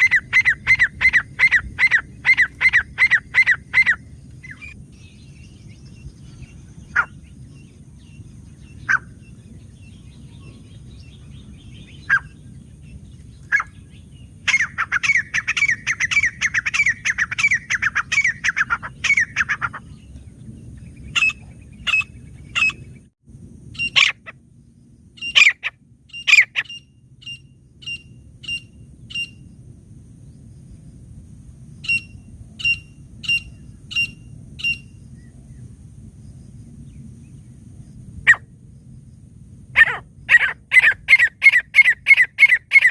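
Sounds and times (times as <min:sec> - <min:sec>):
bird calling: 0:00.0 - 0:20.2, 0:20.9 - 0:23.0, 0:23.8 - 0:24.4, 0:25.2 - 0:29.4, 0:39.8 - 0:42.9.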